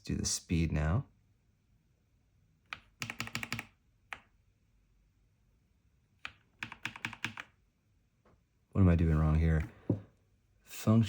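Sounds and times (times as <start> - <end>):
mechanical keyboard keystrokes: 2.7 - 4.2, 6.2 - 7.5.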